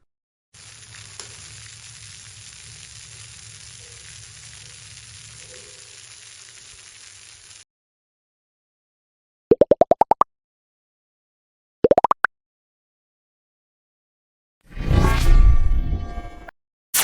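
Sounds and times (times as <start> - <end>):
crackling hiss: 0.6 - 7.6.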